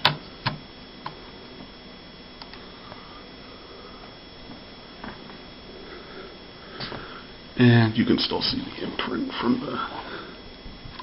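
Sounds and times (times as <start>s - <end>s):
low steady hiss: 0.0s - 11.0s
faint clicks: 2.4s - 2.6s.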